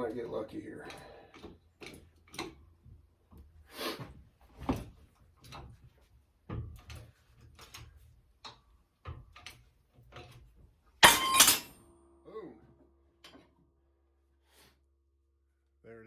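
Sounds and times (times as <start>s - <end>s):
metal creaking and clunking: 4.6s - 11.8s.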